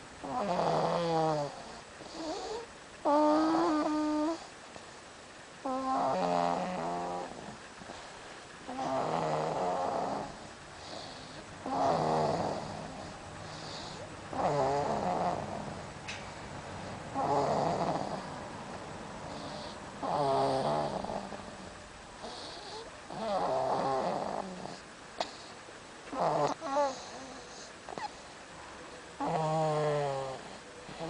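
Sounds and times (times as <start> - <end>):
person snoring: 8.7 - 15.8, 19.2 - 21.4, 29.2 - 31.0.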